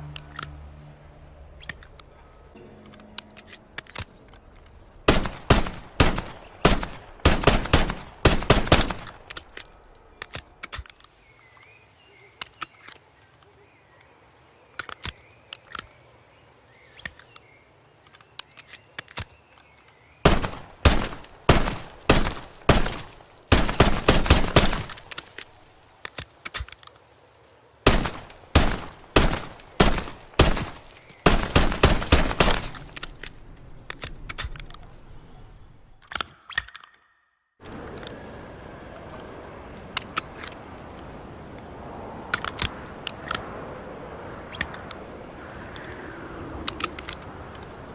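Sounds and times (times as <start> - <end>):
pistol shots: 5.1 - 9.2, 20.3 - 25.1, 27.9 - 32.9
faint clicks: 44.5 - 47.9.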